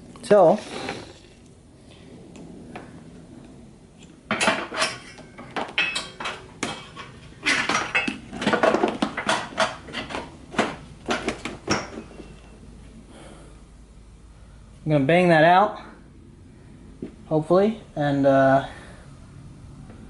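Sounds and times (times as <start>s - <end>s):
metal objects clinking: 4.3s - 10.3s.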